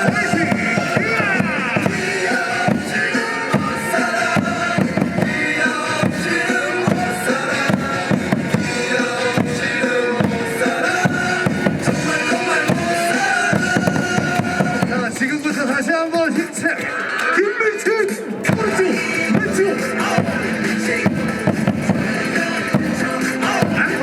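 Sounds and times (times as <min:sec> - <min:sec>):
cheering music with drum beat: 0:00.0 - 0:15.4, 0:18.5 - 0:24.0.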